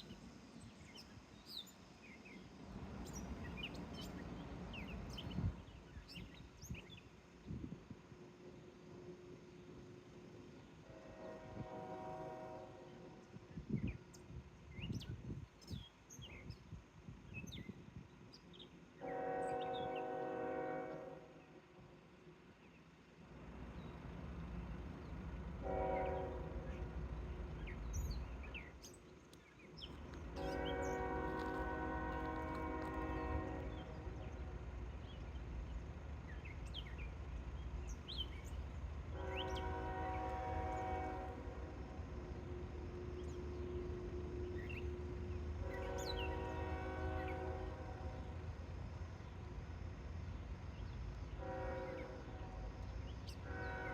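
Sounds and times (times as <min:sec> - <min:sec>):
songbirds chirping: 0:00.1 - 0:07.6, 0:08.4 - 0:21.7, 0:22.3 - 0:53.9
train air horn blasts: 0:10.8 - 0:13.5, 0:19.0 - 0:21.6, 0:25.6 - 0:27.0, 0:30.3 - 0:34.6, 0:39.1 - 0:48.5, 0:51.3 - 0:53.9.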